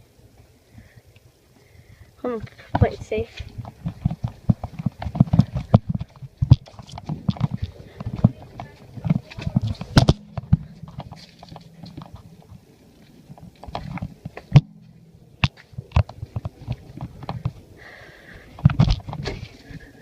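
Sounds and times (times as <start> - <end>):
handling noise knocks and clicks: 3.6 - 17.7.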